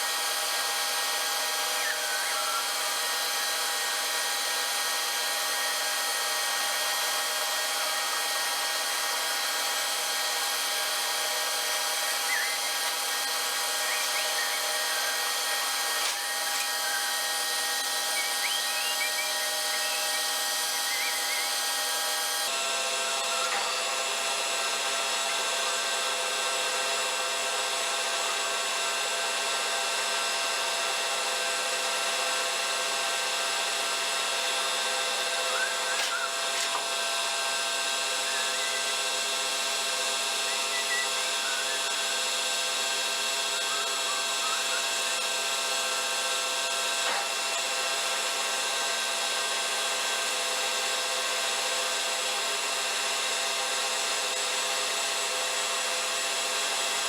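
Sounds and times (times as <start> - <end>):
machine tool whining: 0.0 - 57.0
metal cutting scraping: 35.4 - 38.8.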